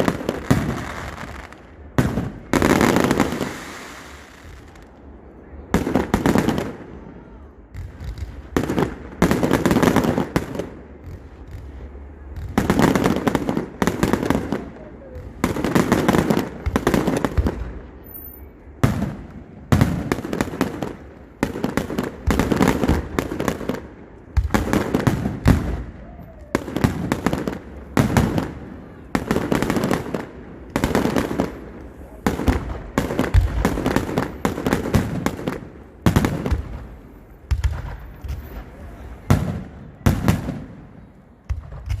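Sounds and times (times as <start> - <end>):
fireworks bursting: 0.0 - 42.0.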